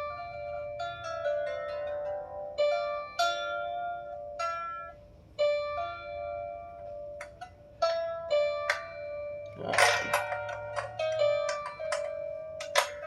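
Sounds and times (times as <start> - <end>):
string pitch sliding: 5.7 - 13.0
harp strings plucked: 8.6 - 13.0.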